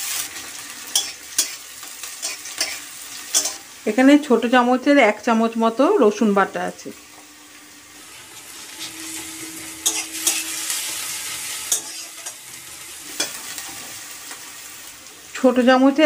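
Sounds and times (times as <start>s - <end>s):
onion sizzling in hot oil: 0.0s - 16.0s
spatula scraping a pan: 0.9s - 3.6s, 8.1s - 14.1s.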